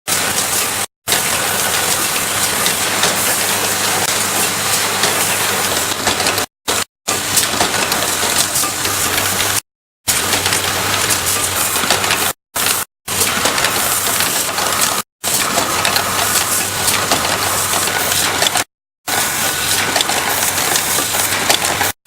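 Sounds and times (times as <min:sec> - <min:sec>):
rapid mechanical clicking and clatter: 0:00.1 - 0:22.0.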